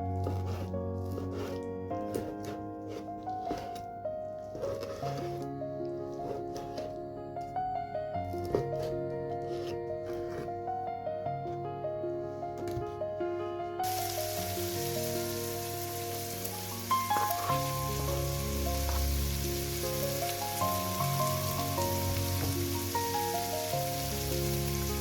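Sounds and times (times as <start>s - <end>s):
background music: 0.0s - 25.0s
food sizzling as it fries: 13.8s - 25.0s.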